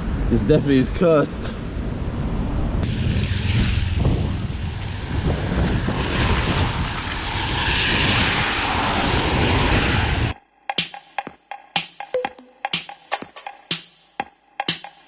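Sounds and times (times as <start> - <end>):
engine rumble: 1.2 - 10.3.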